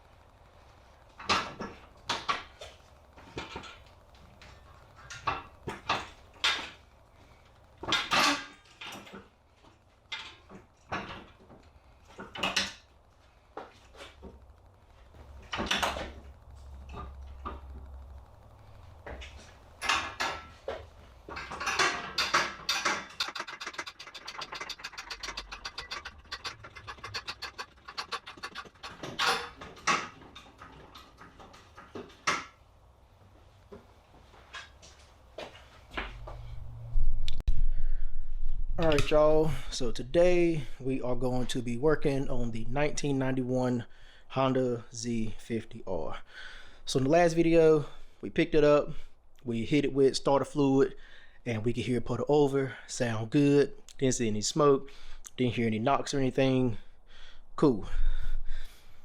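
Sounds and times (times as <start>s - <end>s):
metal tools clinking: 21.3s - 31.4s
rapid ticks: 23.1s - 29.7s.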